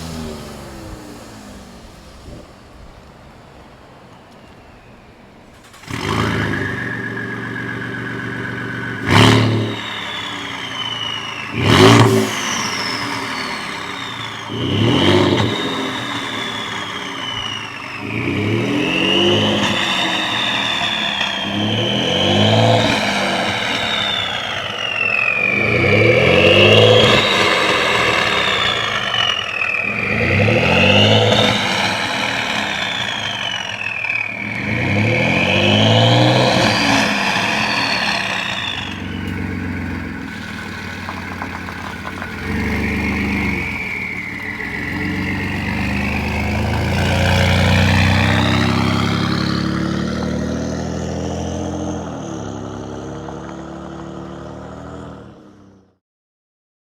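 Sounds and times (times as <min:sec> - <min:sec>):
engine revving: 0:00.0 - 0:03.2, 0:05.4 - 0:56.0
turbo whistle: 0:05.7 - 0:51.3.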